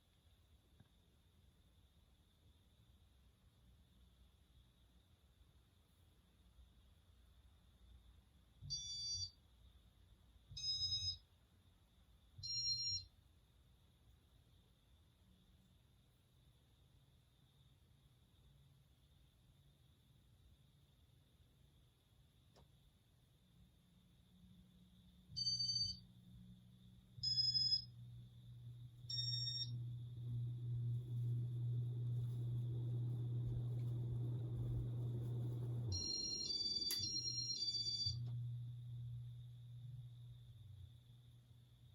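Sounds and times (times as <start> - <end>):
fan motor low hum: 26.5 - 41.9
electronic beeps: 27.2 - 27.9, 29.1 - 29.8, 35.9 - 38.3
short electronic beeps: 27.2 - 27.9.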